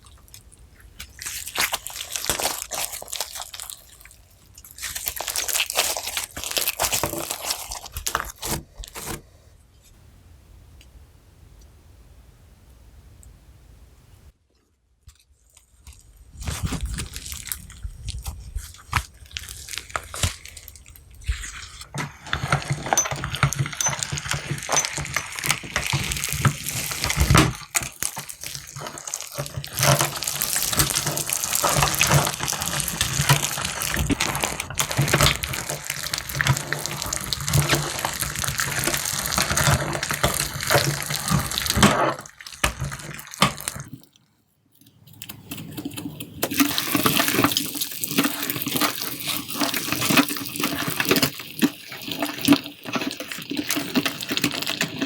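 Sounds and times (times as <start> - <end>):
wet slime squelching and popping: 0.0 - 9.1, 15.1 - 44.1, 45.5 - 55.0.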